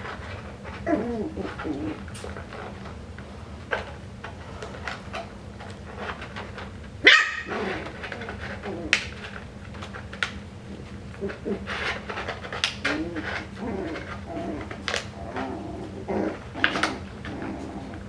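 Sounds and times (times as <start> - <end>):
puppies whimpering and grunting: 0.0 - 5.2, 6.0 - 18.0
puppy high-pitched yip: 7.0 - 7.5.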